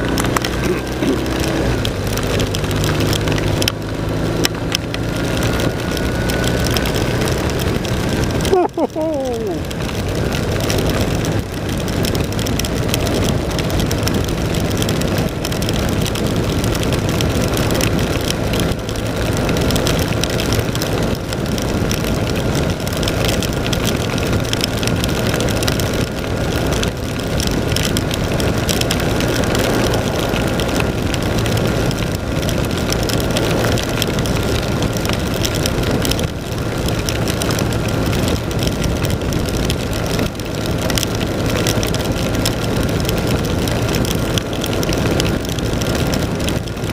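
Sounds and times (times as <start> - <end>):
motorcycle engine running: 0.0 - 46.9
rain noise: 0.0 - 46.9.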